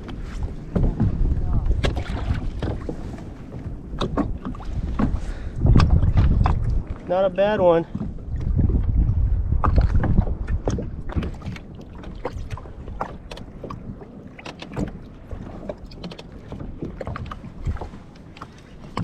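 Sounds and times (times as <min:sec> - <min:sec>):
water sounds: 0:00.0 - 0:19.0
wind buffeting microphone: 0:00.0 - 0:19.0
knocks and clicks of gear: 0:03.9 - 0:06.6.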